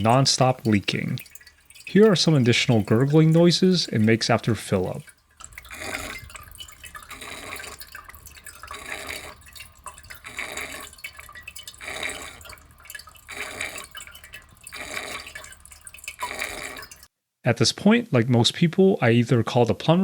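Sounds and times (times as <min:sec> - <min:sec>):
toilet tank gurgling and dripping: 0:00.0 - 0:17.1.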